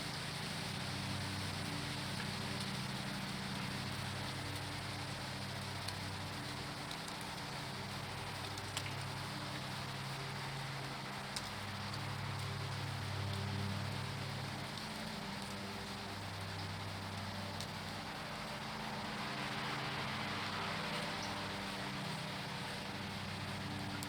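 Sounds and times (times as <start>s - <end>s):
rain hiss: 0.0s - 24.0s
water drips ticking: 8.3s - 9.2s.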